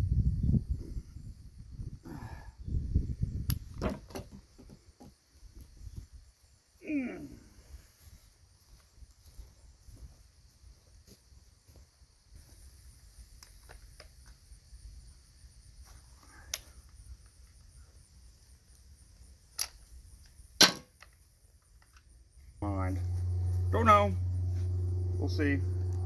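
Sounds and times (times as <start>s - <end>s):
crickets trilling: 0.1s - 7.8s, 9.5s - 20.6s, 21.2s - 26.0s.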